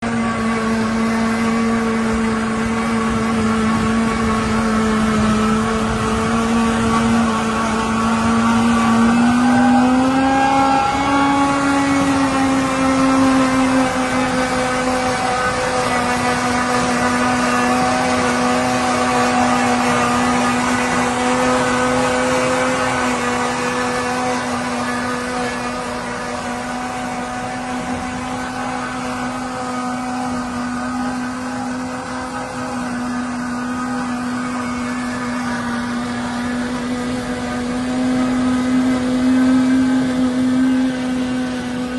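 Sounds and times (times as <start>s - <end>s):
harvester machine whining hum: 0.0s - 41.9s.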